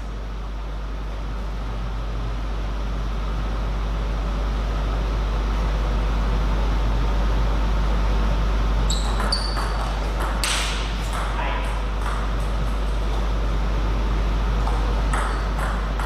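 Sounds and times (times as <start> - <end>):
deep hum with hiss: 0.0 - 16.0
table tennis ball bouncing: 8.9 - 13.3, 14.6 - 16.0.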